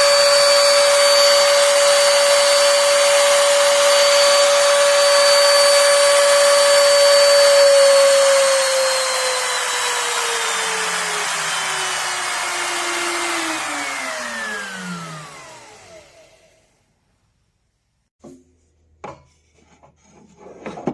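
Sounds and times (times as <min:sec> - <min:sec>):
router motor whining: 0:00.0 - 0:16.6.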